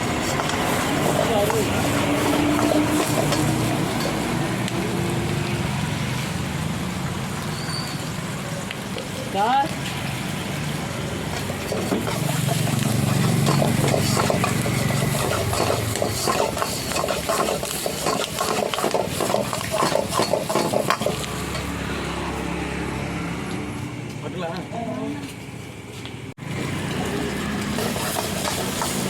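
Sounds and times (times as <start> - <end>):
food sizzling: 0.0 - 22.3, 26.4 - 29.0
metal ladle scraping a pan: 11.3 - 21.7, 27.8 - 29.0.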